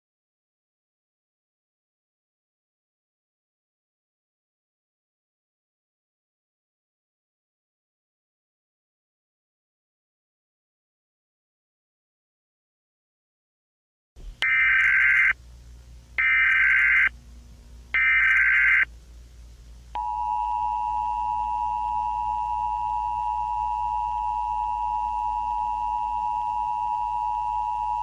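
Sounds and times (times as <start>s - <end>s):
faint low hum: 14.2s - 28.0s
screeching digital data bursts: 14.4s - 15.4s, 16.2s - 17.1s, 18.0s - 18.9s.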